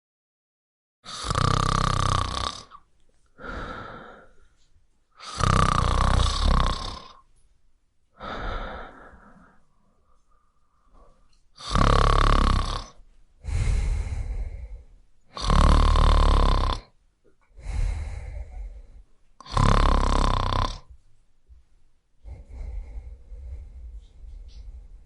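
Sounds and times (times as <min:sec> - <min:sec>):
person snoring: 0:01.1 - 0:02.8, 0:03.4 - 0:04.4, 0:05.2 - 0:07.2, 0:08.2 - 0:09.6, 0:11.0 - 0:17.0, 0:17.6 - 0:20.9, 0:22.2 - 0:25.0.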